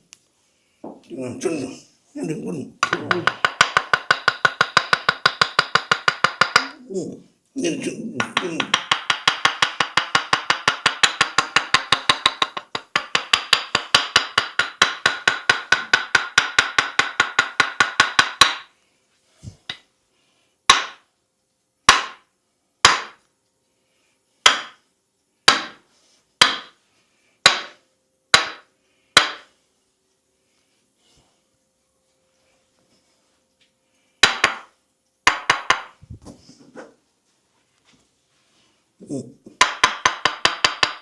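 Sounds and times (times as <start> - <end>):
hands tapping on head: 2.8 - 6.8, 8.1 - 18.7, 34.2 - 34.7, 35.3 - 36.4, 39.5 - 41.0.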